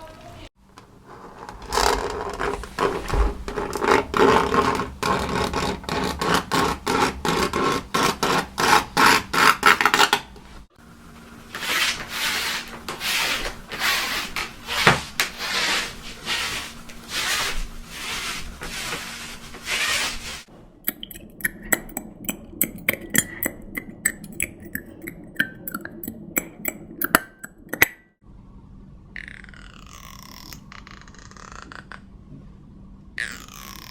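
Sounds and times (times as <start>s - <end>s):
fingernails scraping a blackboard: 0.9s - 10.3s, 11.5s - 20.5s
feet shuffling on floor: 11.6s - 20.5s.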